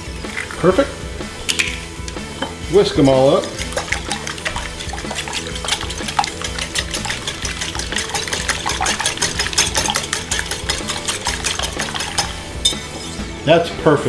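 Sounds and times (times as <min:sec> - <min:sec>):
eggs whisked in a bowl: 0:02.7 - 0:13.0.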